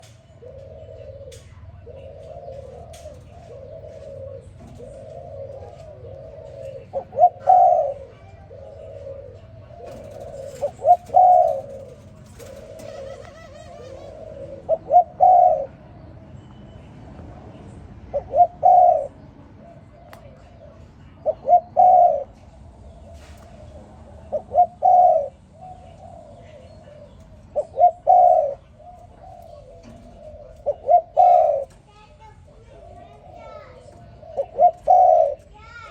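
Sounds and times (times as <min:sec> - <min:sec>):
dove cooing: 0:00.0 - 0:16.2, 0:18.0 - 0:35.9.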